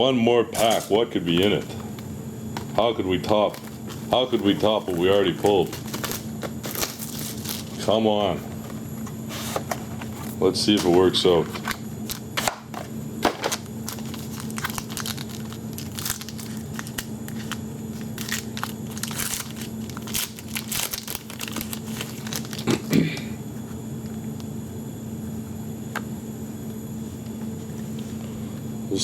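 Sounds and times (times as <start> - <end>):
steady low hum: 0.0 - 29.0
card wrapper crinkling and tearing: 2.7 - 8.0, 13.3 - 22.9.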